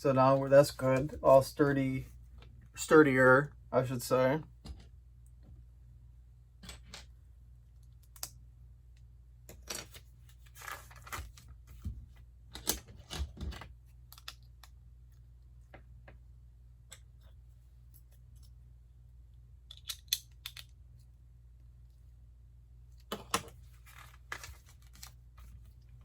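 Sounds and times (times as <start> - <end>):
plastic bricks clicking: 19.7 - 20.7.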